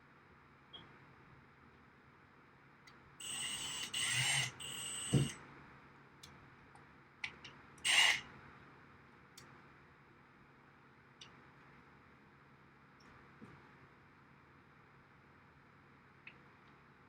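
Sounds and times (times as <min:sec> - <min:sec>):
power drill whining: 0:03.2 - 0:05.3, 0:07.9 - 0:08.2
knock: 0:05.1 - 0:05.3.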